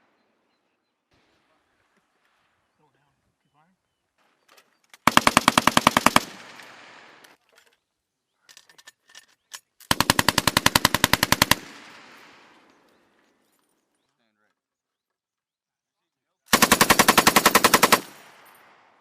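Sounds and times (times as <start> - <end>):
machine gun automatic fire: 5.0 - 7.2, 9.9 - 12.7, 16.5 - 19.0
gunfire echo: 5.1 - 7.3, 9.9 - 13.2, 16.5 - 19.0.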